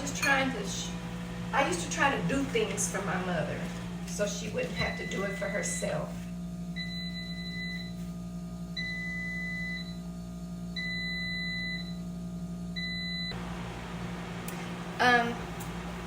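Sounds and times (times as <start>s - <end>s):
appliance alert beeps: 4.2s - 13.4s.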